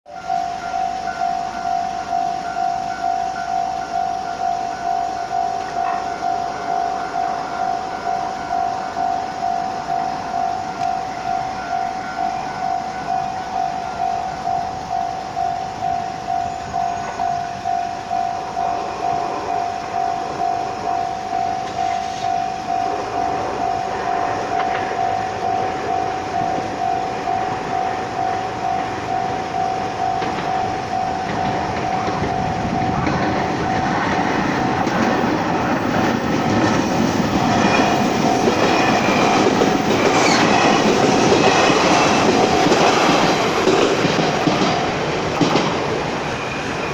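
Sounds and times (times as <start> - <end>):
electric train approaching: 0.1 - 46.9
level-crossing warning bell: 0.1 - 46.9.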